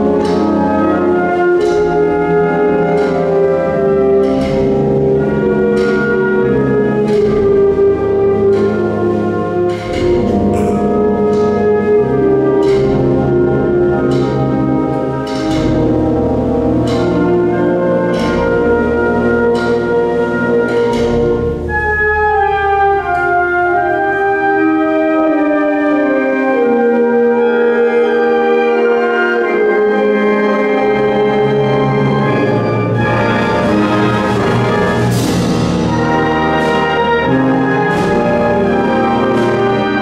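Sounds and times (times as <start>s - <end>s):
steady drum beat: 0.0s - 22.1s, 33.0s - 40.0s
wind band playing a march: 0.0s - 40.0s.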